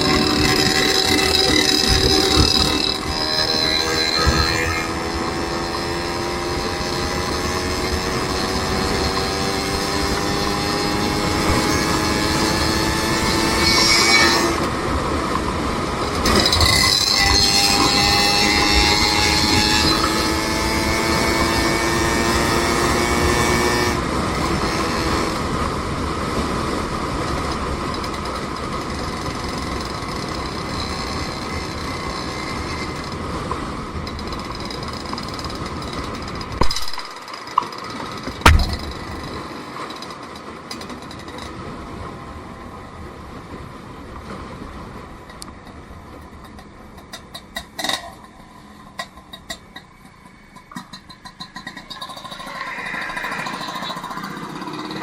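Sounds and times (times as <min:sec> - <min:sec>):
rising multi-tone whine: 0:00.0 - 0:25.4, 0:38.4 - 0:39.4, 0:50.4 - 0:55.0
vehicle running: 0:00.0 - 0:41.4, 0:48.8 - 0:55.0.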